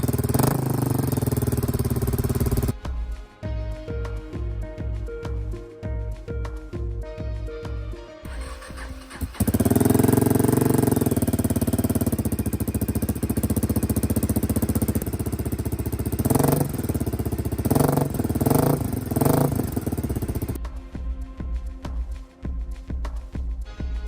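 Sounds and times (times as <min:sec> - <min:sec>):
motorcycle engine idling: 0:00.0 - 0:02.8, 0:08.3 - 0:20.6
motorcycle throttle revving: 0:00.0 - 0:02.8, 0:08.3 - 0:20.6.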